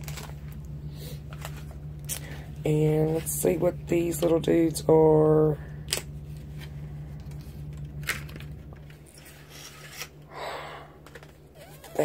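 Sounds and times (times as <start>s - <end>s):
packaging rustling: 0.0s - 2.5s
low electrical hum: 0.0s - 12.0s.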